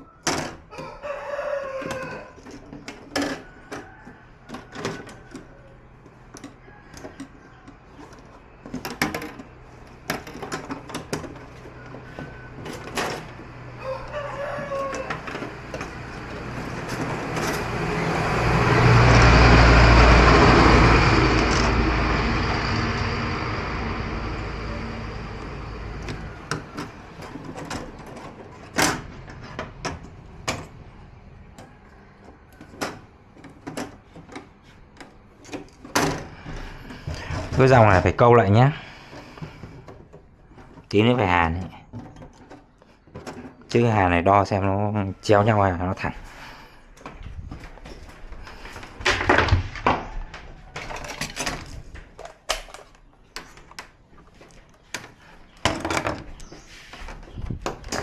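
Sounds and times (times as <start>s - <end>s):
rooster crowing: 0.0s - 2.4s, 3.2s - 5.8s, 13.6s - 19.3s.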